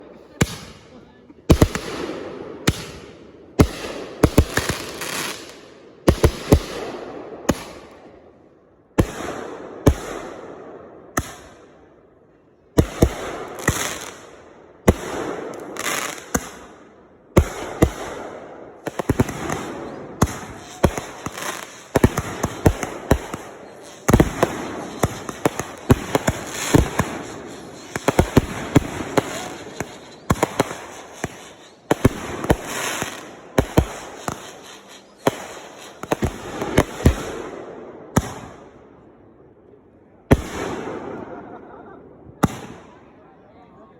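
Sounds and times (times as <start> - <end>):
fireworks bangs: 0.3 - 8.0, 12.8 - 38.8, 40.3 - 43.1
fireworks crackling: 1.5 - 6.9, 12.8 - 16.8, 17.4 - 38.5.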